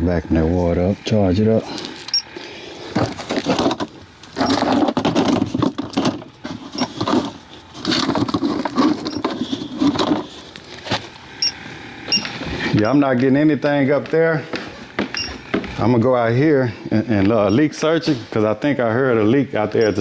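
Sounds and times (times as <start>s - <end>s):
rustling: 2.8s - 11.2s
knocks and clicks of handling equipment: 2.9s - 10.3s, 14.6s - 15.8s.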